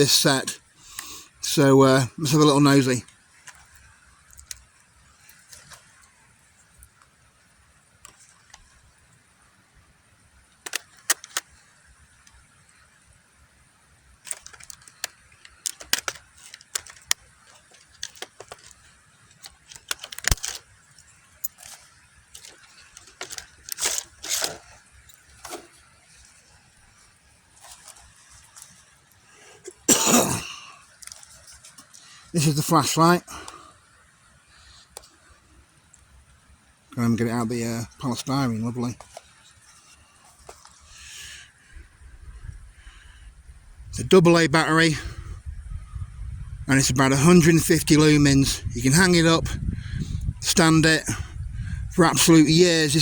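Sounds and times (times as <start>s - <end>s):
packaging rustling: 14.3s - 25.8s.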